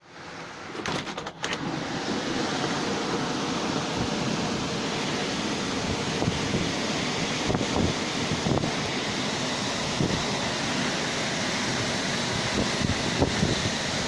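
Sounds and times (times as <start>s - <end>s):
gusting wind: 1.7s - 14.0s.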